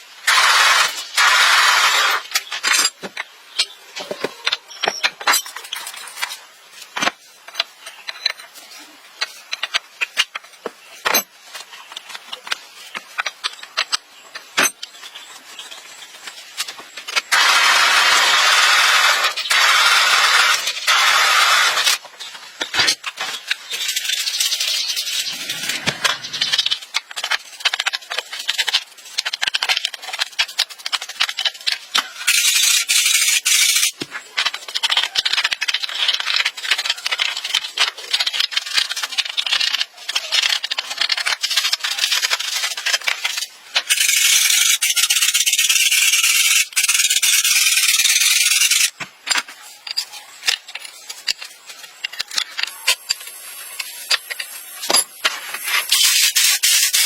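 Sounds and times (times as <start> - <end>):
small clicks and rattles: 21.8 - 57.0
scraping on a hard surface: 23.3 - 38.9.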